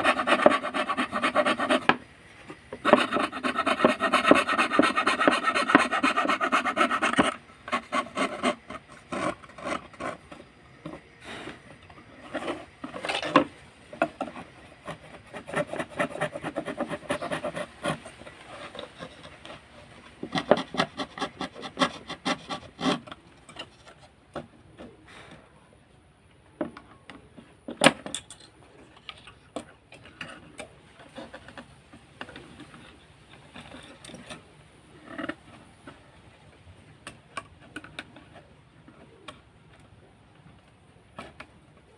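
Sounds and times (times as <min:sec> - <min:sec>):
fretsaw rasping through wood: 0:00.0 - 0:02.0, 0:02.8 - 0:10.3, 0:14.3 - 0:19.5.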